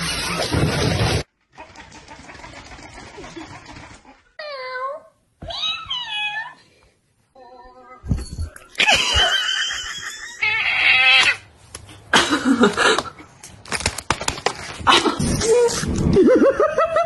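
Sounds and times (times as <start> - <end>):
cats meowing and yowling: 10.2 - 11.4.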